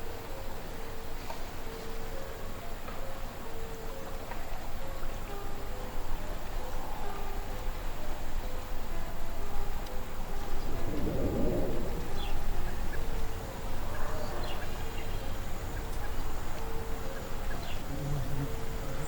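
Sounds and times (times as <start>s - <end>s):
moving water: 0.0s - 19.0s
wind: 0.0s - 19.0s
bird chirps: 12.1s - 19.0s.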